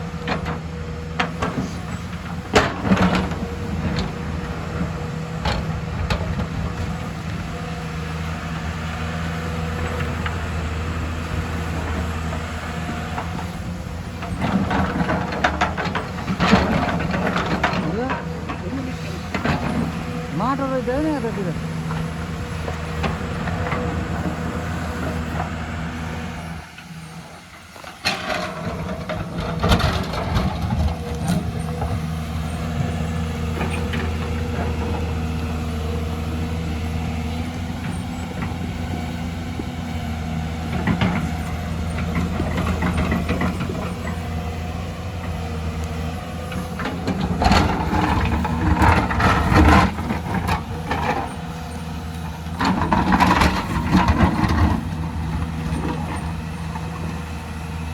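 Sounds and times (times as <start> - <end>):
excavator diesel engine running: 0.0 - 57.9
knocks and clatter: 13.1 - 20.8, 52.3 - 57.4.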